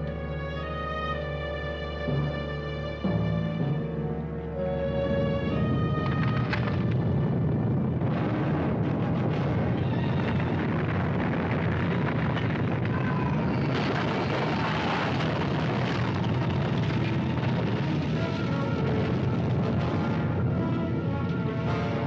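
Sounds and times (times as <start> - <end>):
faint dramatic music: 0.0 - 13.3, 15.0 - 22.0
earthquake rumbling: 4.8 - 22.0.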